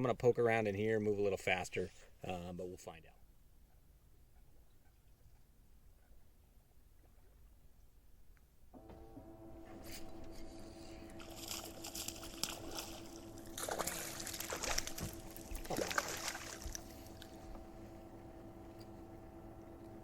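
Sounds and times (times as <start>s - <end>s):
electric motor humming: 8.8s - 20.0s
water splashing against boat: 9.7s - 18.9s.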